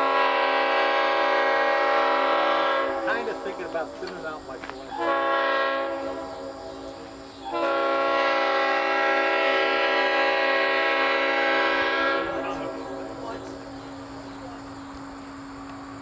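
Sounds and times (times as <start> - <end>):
locomotive air horn blasts: 0.0 - 3.7, 4.9 - 13.6.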